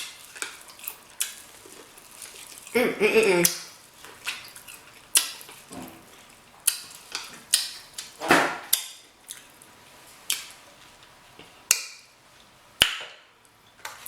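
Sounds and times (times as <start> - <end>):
wet chewing sounds: 0.0 - 10.6.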